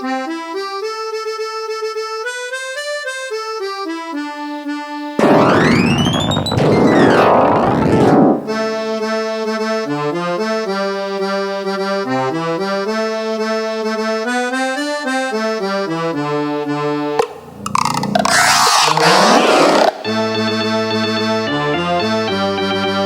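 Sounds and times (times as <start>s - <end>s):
synthesized midi music: 5.2s - 8.7s, 17.2s - 20.3s.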